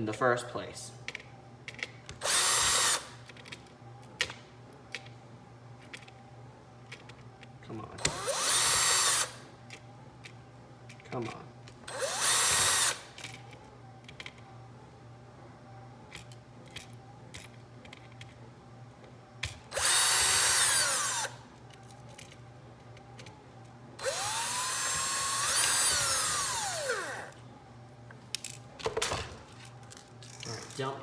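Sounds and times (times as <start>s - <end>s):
power drill whining: 2.2s - 3.2s, 8.0s - 9.4s, 11.9s - 13.2s, 19.7s - 21.4s, 24.0s - 27.4s.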